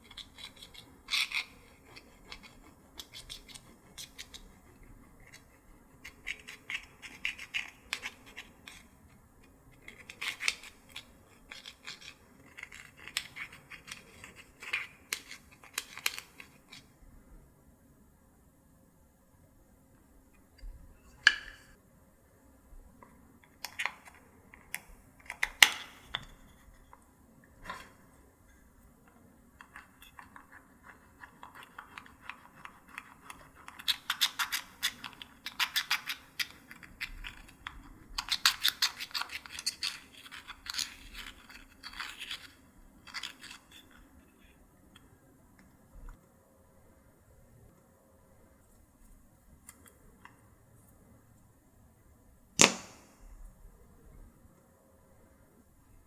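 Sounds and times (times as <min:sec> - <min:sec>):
slime snapping: 0:52.6 - 0:53.1
slime popping: 0:52.6 - 0:53.2.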